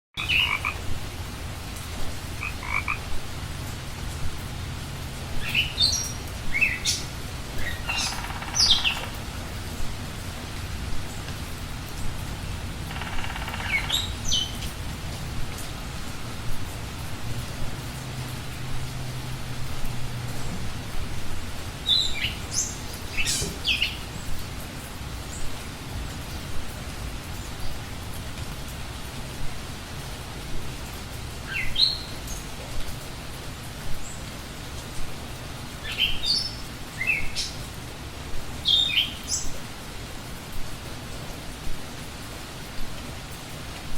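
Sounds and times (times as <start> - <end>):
frogs chirping: 0.2 - 0.8, 2.4 - 3.1, 7.6 - 9.5, 12.8 - 14.6
rushing water: 0.2 - 43.9.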